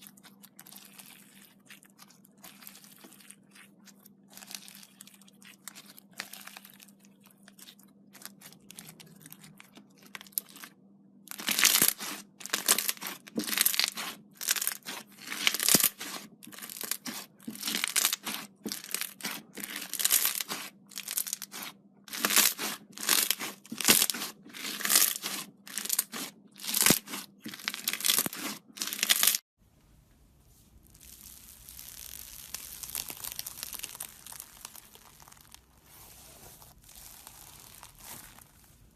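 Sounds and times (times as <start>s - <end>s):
slime crackling and popping: 11.3s - 29.4s, 30.7s - 38.9s.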